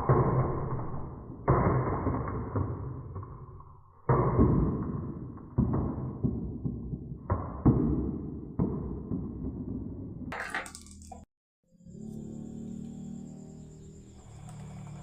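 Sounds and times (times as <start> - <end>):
marbles rolling on wood: 9.1 - 11.3, 14.2 - 15.0
marbles clacking on wooden run: 10.3 - 11.3.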